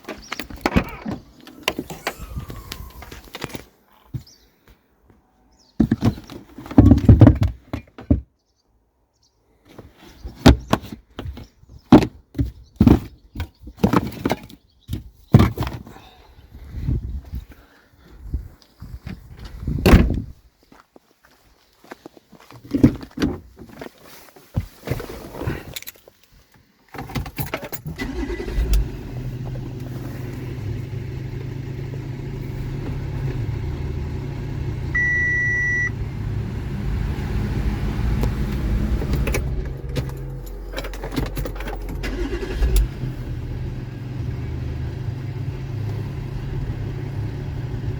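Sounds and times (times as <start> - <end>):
car engine starting and idling: 0.7 - 3.6, 27.8 - 47.9
beep: 34.9 - 35.9.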